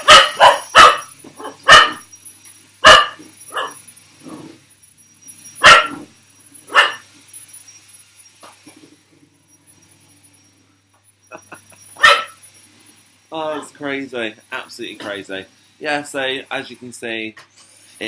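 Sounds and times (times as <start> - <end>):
dog barking: 0.0 - 2.1, 2.8 - 3.8, 5.6 - 6.1, 6.7 - 7.0, 12.0 - 12.4
vacuum cleaner whine: 0.0 - 18.0.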